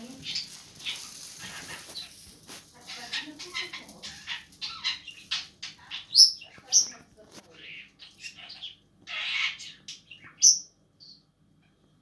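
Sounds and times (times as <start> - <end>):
budgerigar chattering: 7.6 - 11.2.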